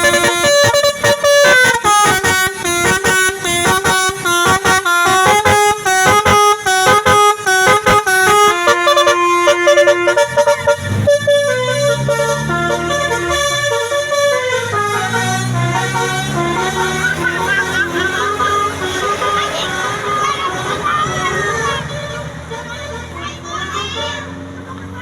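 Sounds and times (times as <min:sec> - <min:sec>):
musical air horn tune: 0:00.0 - 0:20.7.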